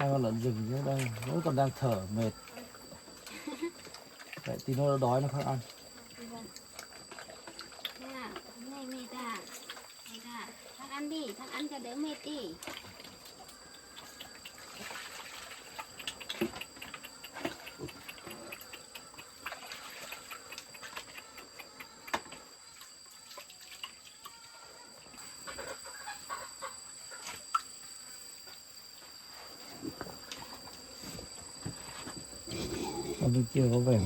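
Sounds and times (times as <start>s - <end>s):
high-pitched insect drone: 0.0s - 34.0s
chickens clucking: 24.7s - 27.4s.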